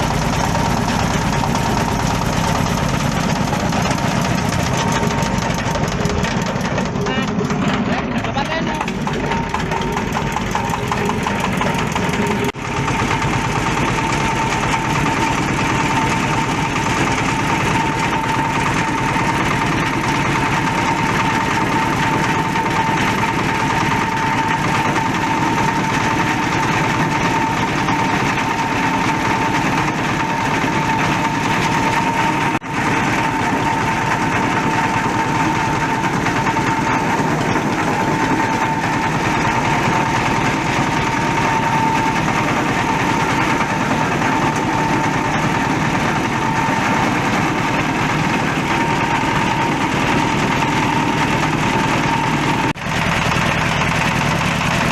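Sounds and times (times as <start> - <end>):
shredding machine whine and rattle: 0.0 - 54.9.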